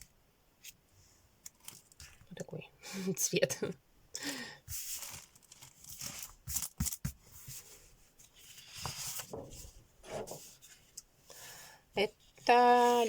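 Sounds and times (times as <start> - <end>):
thick paper rustling: 4.7 - 10.9.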